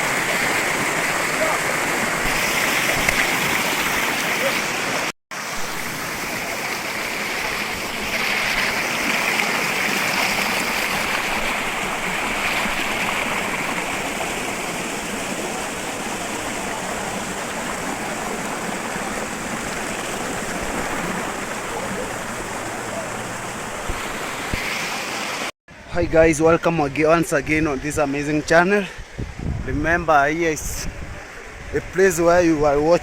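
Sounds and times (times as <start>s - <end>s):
waterfall rushing: 0.0s - 25.5s.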